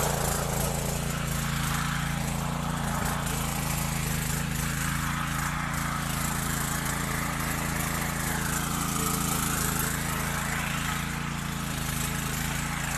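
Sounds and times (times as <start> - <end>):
high rushing noise: 0.0 - 3.2
small tractor engine running: 0.0 - 12.9.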